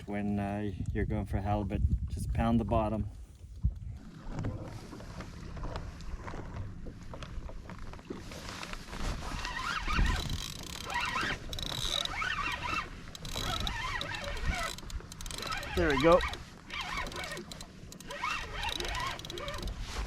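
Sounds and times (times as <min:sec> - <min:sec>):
wind on microphone: 0:00.0 - 0:06.6, 0:08.9 - 0:17.4
water sloshing against kayak hull: 0:02.9 - 0:20.0.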